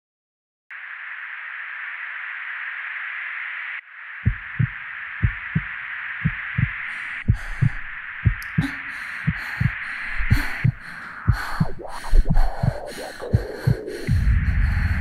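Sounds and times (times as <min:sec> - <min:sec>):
steady hiss: 0:00.8 - 0:15.0
low heartbeat-like thumps: 0:04.2 - 0:15.0.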